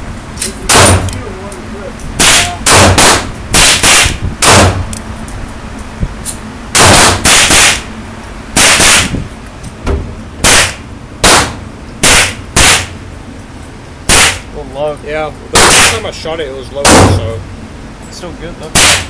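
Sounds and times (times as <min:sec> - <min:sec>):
fainter gunshots: 0:00.7 - 0:01.1, 0:02.2 - 0:04.8, 0:06.8 - 0:07.9, 0:08.6 - 0:09.1, 0:10.4 - 0:12.9, 0:14.1 - 0:14.4, 0:15.6 - 0:16.1, 0:16.8 - 0:17.3, 0:18.7 - 0:19.0
pistol shots: 0:00.7 - 0:01.2, 0:02.2 - 0:04.8, 0:06.8 - 0:07.9, 0:08.6 - 0:09.1, 0:10.4 - 0:13.0, 0:14.1 - 0:14.5, 0:15.6 - 0:16.1, 0:16.8 - 0:17.2, 0:18.7 - 0:19.0.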